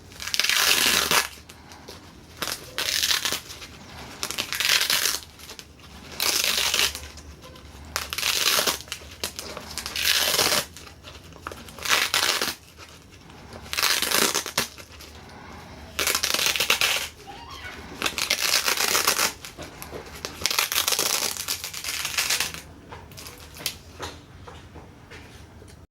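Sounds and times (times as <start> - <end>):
crumpling crushing noise: 0.0 - 24.1.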